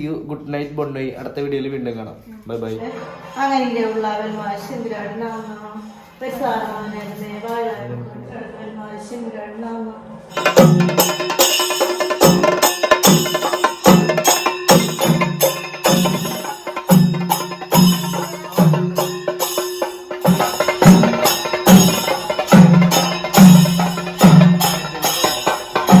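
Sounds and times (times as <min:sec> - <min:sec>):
bright percussion: 0:10.3 - 0:26.0
upbeat music with drum beat: 0:10.4 - 0:26.0.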